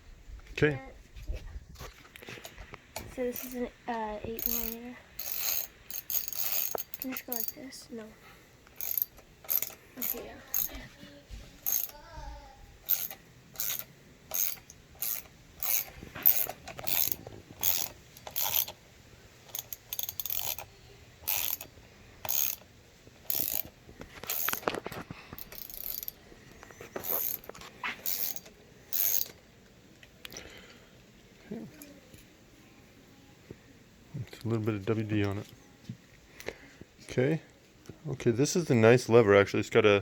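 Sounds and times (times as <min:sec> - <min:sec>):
ratchet wrench clicking: 0:03.3 - 0:03.6, 0:04.4 - 0:07.6, 0:08.7 - 0:10.8, 0:11.6 - 0:12.0, 0:12.8 - 0:18.8, 0:19.4 - 0:24.8, 0:25.4 - 0:26.2, 0:27.0 - 0:29.4.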